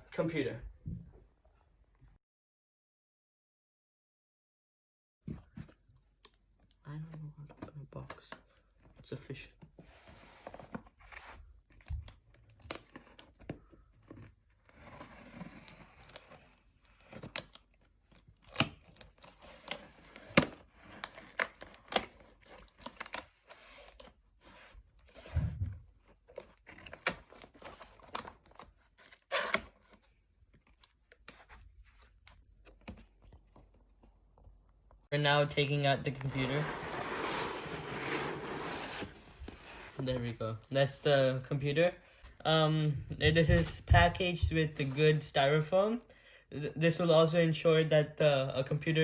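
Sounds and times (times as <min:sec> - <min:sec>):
tape and cardboard tearing: 0:26.2 - 0:30.0.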